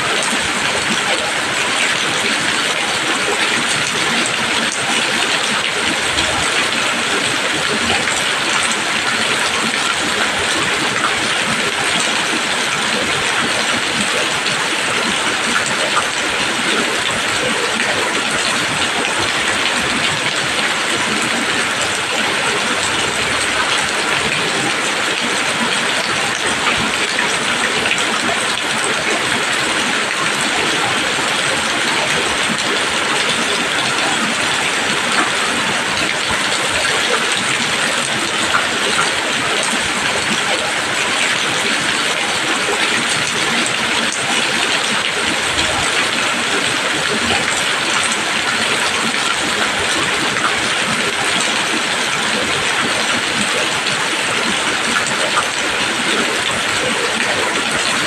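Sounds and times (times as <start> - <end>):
rain falling on leaves: 0.0 - 58.0.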